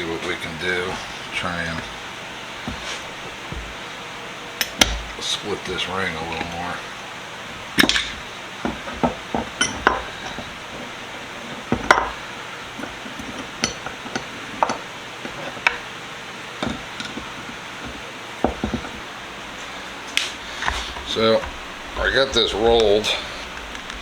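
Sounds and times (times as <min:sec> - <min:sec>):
metal tools tapping steel ring: 0:09.6 - 0:10.4.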